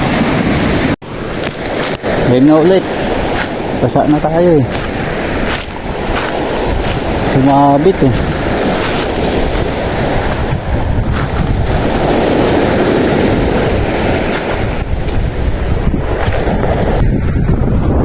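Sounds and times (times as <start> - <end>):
sea surf rushing: 0.0 - 18.0
wind buffeting microphone: 0.0 - 18.0.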